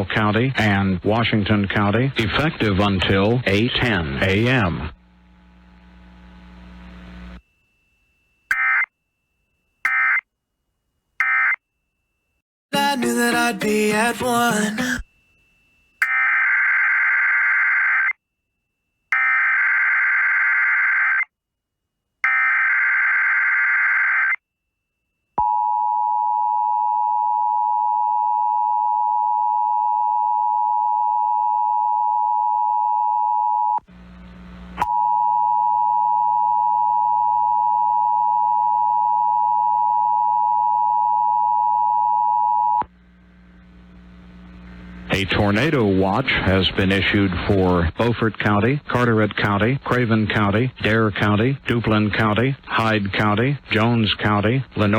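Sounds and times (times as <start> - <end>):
low hum: 42.8 - 48.0
static burst: 42.9 - 50.0.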